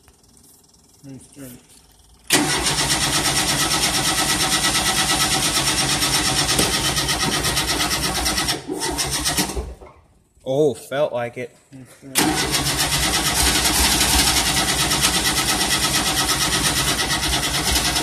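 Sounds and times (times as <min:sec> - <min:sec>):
starter cranking engine: 0:02.0 - 0:09.8, 0:12.2 - 0:18.0.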